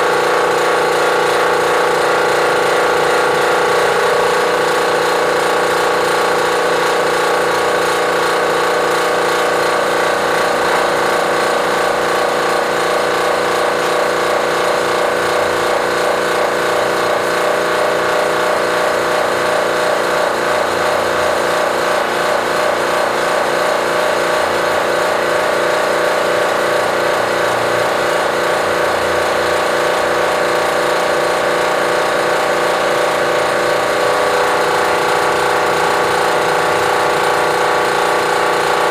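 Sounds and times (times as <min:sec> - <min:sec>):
air compressor running: 0:00.0 - 0:38.9.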